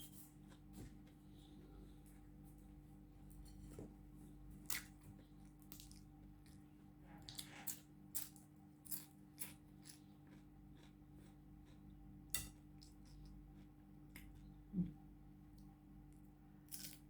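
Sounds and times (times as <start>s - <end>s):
steady low hum: 0.0s - 17.0s
crispy flatbread crackling and crunching: 16.1s - 17.0s.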